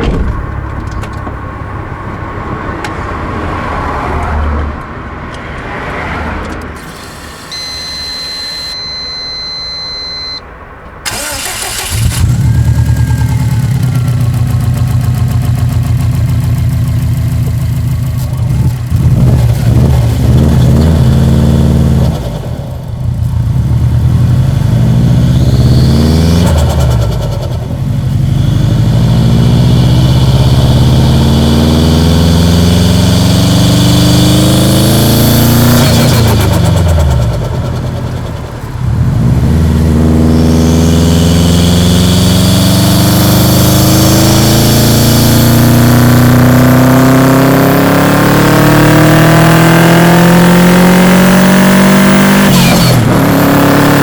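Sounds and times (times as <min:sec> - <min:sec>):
car engine starting and revving: 0:00.0 - 0:54.0
steady high tone: 0:06.8 - 0:10.5.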